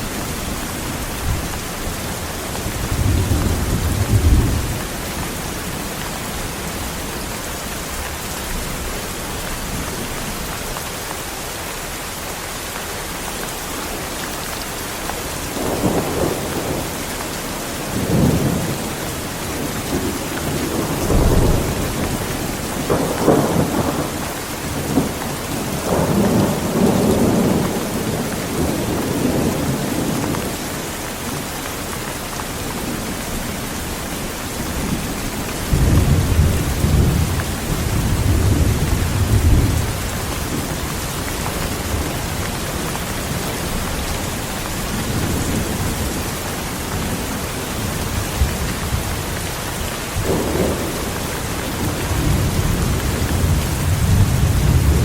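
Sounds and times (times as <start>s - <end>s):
rolling thunder: 0.0s - 6.9s, 17.9s - 30.5s, 32.7s - 49.5s, 50.1s - 55.0s
heavy rain on surfaces: 0.0s - 55.0s.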